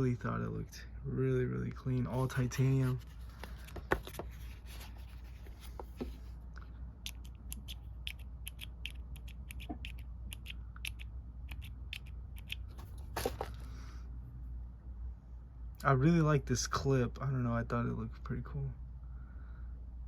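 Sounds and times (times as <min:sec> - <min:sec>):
faint low hum: 0:00.0 - 0:20.0
pen clicking: 0:07.0 - 0:12.7.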